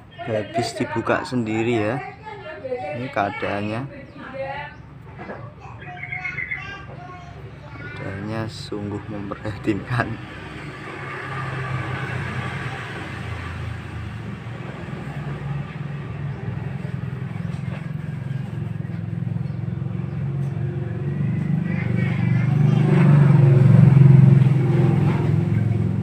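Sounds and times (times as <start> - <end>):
vehicle engine running: 5.8 - 26.0.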